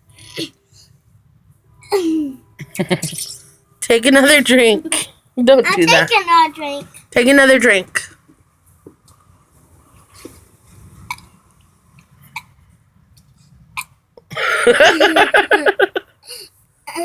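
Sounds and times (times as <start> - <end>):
boy burping: 13.8 - 16.0.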